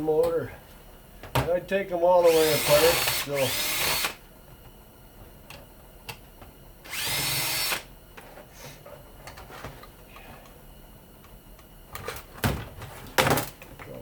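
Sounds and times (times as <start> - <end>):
power drill whine: 2.2 - 4.2, 6.9 - 7.9.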